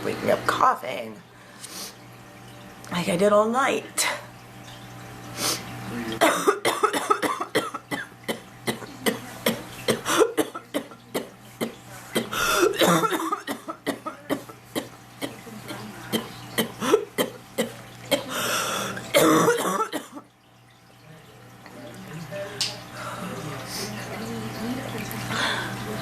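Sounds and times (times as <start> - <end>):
woman coughing: 6.2 - 18.5, 19.1 - 20.2.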